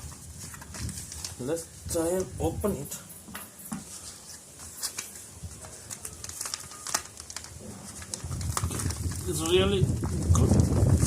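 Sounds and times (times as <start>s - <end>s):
plastic packaging crinkling: 4.2s - 11.0s.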